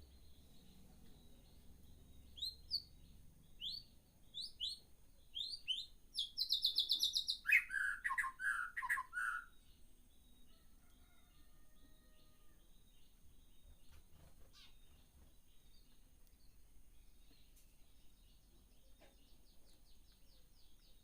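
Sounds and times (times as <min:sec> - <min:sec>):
birds chirping and trilling: 0:00.0 - 0:21.0.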